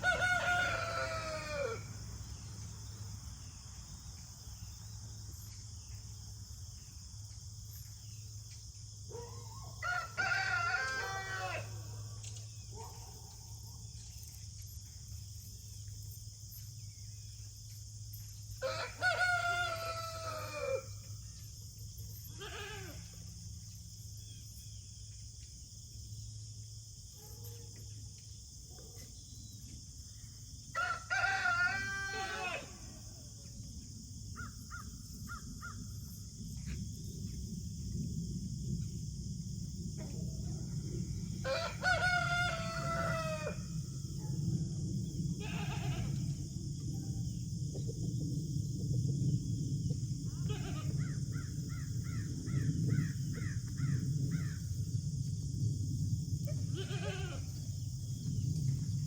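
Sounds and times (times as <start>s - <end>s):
rooster crowing: 0.0s - 2.0s, 9.5s - 11.9s, 18.6s - 21.0s, 30.7s - 32.9s, 41.4s - 43.8s
steady low hum: 32.6s - 59.0s.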